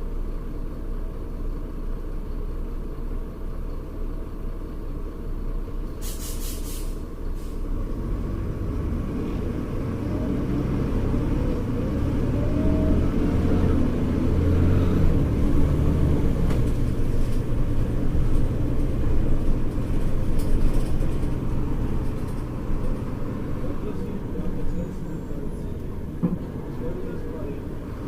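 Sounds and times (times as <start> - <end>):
bus diesel engine running: 0.0 - 28.0
rattles: 18.2 - 23.2.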